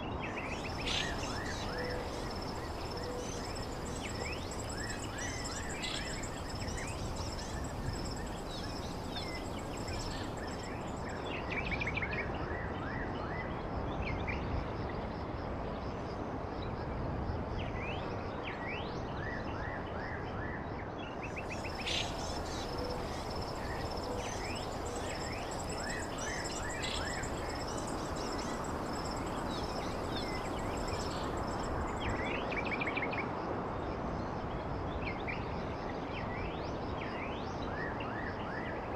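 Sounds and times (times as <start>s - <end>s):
background hiss: 0.4s - 11.4s, 21.3s - 32.7s
high insect drone: 0.4s - 11.5s, 21.3s - 32.8s
bird chirps: 21.4s - 32.2s.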